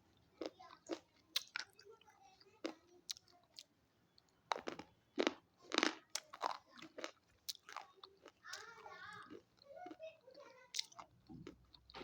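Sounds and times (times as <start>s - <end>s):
crunchy stick being chewed: 0.4s - 1.8s, 2.6s - 10.0s.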